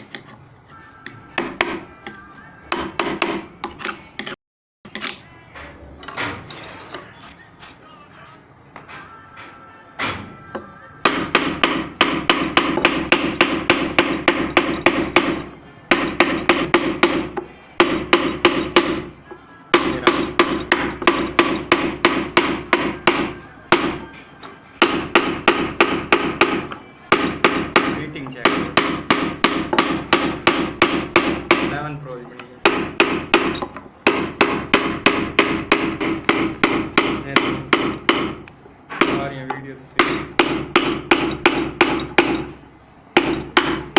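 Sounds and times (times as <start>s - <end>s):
rapid hammering on wood: 2.7s - 3.5s, 11.0s - 19.2s, 19.8s - 24.0s, 24.8s - 31.8s, 32.6s - 39.4s, 40.0s - 42.6s, 43.2s - 43.9s.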